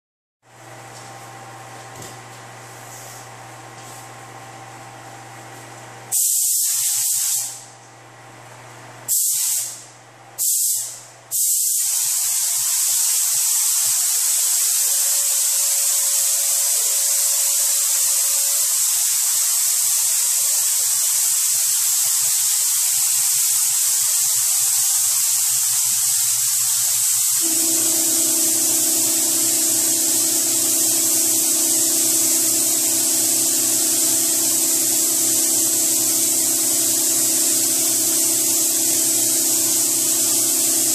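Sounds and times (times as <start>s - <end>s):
paint spray gun hissing: 6.1s - 7.6s, 9.1s - 9.8s, 10.4s - 40.9s
low hum: 27.4s - 40.3s.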